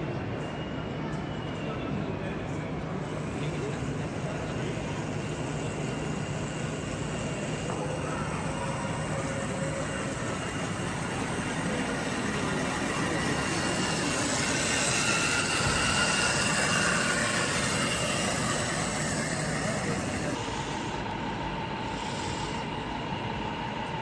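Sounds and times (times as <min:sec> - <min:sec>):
small electric motors whining: 0:03.0 - 0:24.0
steady hiss: 0:03.1 - 0:21.1.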